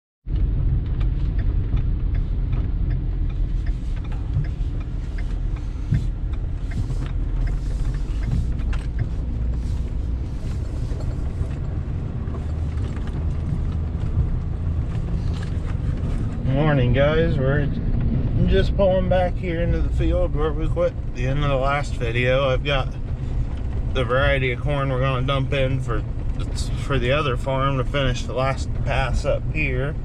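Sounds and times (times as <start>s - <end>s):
vehicle engine rumble: 0.2s - 30.0s.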